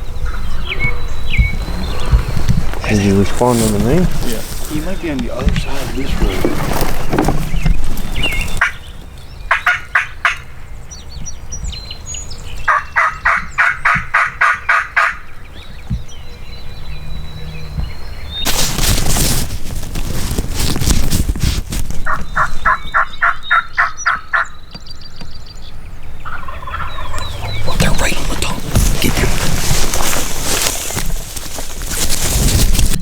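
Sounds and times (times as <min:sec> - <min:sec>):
turkey yelps: 0:22.1 - 0:24.6, 0:26.2 - 0:27.6.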